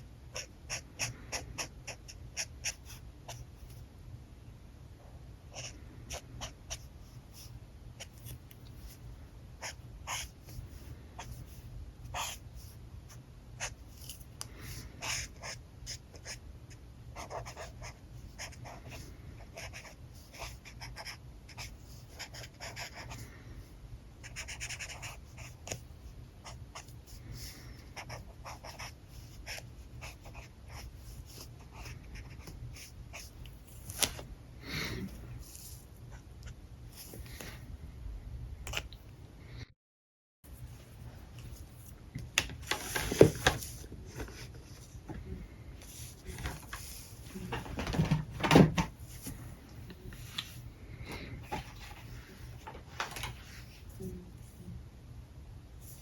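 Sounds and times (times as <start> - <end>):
marker scratching on paper: 0.3 - 3.8, 9.6 - 12.8, 17.2 - 23.2, 24.2 - 25.8, 27.9 - 34.1.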